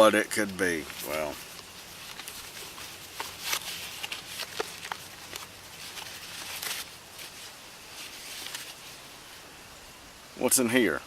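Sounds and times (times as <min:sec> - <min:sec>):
brief rustle: 0:00.8 - 0:09.0.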